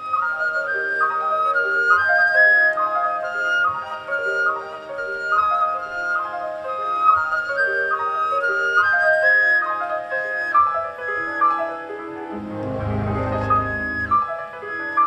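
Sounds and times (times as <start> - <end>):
orchestra playing classical music: 11.9 - 14.9.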